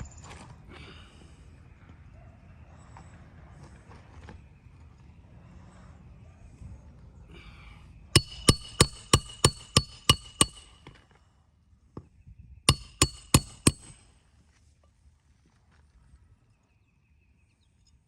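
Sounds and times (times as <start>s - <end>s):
hatchet hammering nails: 8.2s - 10.9s, 12.7s - 14.0s.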